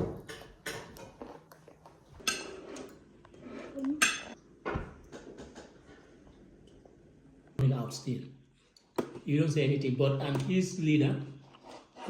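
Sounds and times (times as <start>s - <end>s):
dishes and cutlery clattering: 0.0s - 1.5s, 2.2s - 2.9s, 4.0s - 4.4s.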